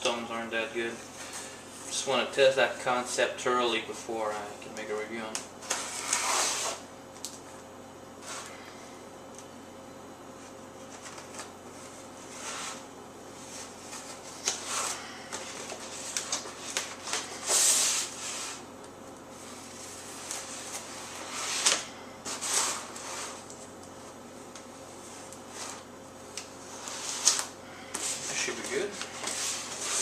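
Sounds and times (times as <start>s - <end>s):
cardboard and plastic packaging rustling: 13.4s - 18.6s, 26.5s - 30.0s.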